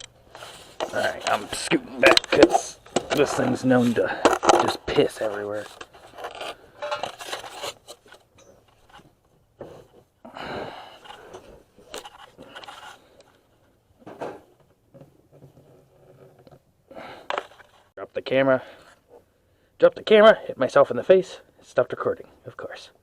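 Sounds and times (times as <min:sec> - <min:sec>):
scrapes and knocks of tools: 0:00.0 - 0:10.1, 0:11.0 - 0:16.6.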